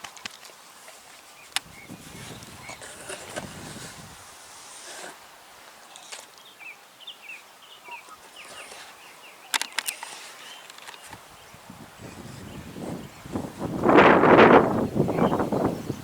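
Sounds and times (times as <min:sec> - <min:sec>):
bird chirping: 0:05.9 - 0:13.4, 0:14.7 - 0:16.0
sharp clicks: 0:09.5 - 0:11.2.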